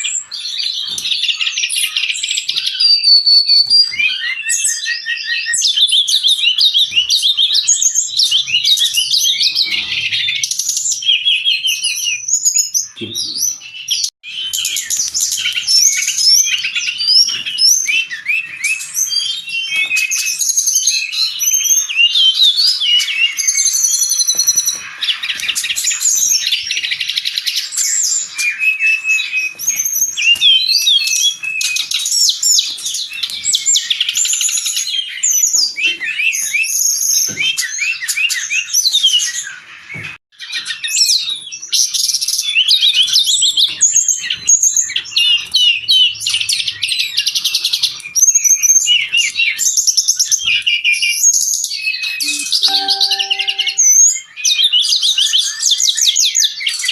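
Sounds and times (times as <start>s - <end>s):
bird singing whistled trills: 52.2s - 54.2s.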